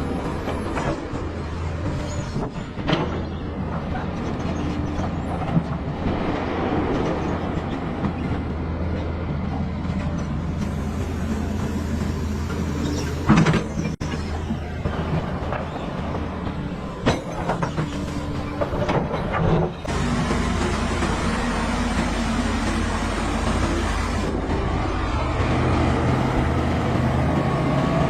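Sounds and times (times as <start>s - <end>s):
bulldozer diesel engine running: 19.9s - 28.0s.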